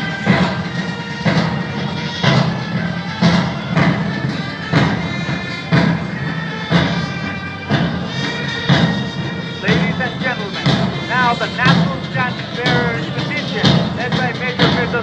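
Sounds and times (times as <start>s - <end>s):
military band playing a march: 0.0s - 15.0s
bass drum beat: 7.7s - 15.0s.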